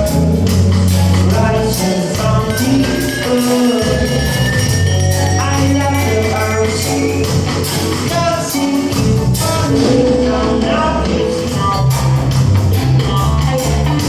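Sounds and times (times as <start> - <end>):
band playing: 0.0 - 14.0
deep bass: 0.0 - 14.0
sung vocal melody: 0.0 - 14.0.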